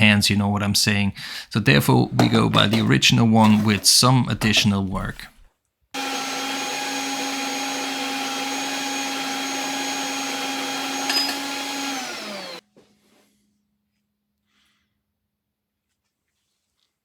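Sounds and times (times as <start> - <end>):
electric motor whining: 6.0 - 12.6.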